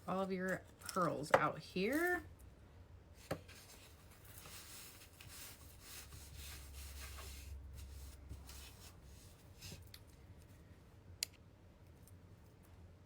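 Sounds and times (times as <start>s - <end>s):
low steady hum: 0.0s - 13.0s
hands rubbing and scraping items: 0.1s - 2.2s, 3.2s - 10.0s.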